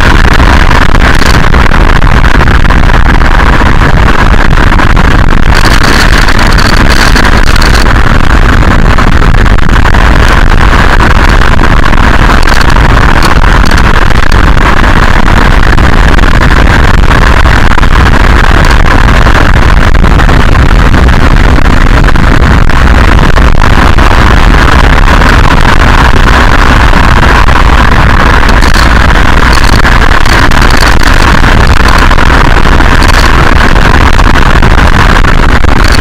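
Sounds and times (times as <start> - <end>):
road and wind noise: 0.0 - 36.0.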